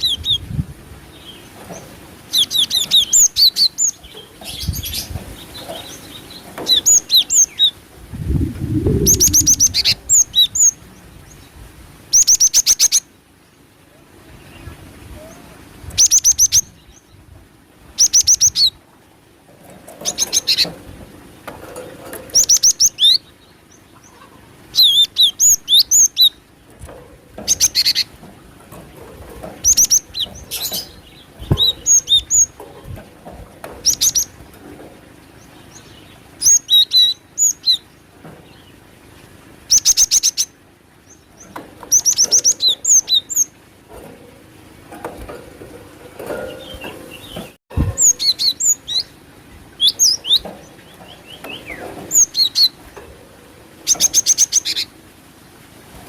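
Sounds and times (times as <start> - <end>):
bird chirps and trills: 1.1 - 11.5, 12.1 - 13.1, 16.0 - 17.2, 18.0 - 18.8, 19.9 - 20.8, 21.6 - 38.8, 39.7 - 44.3, 45.0 - 55.0.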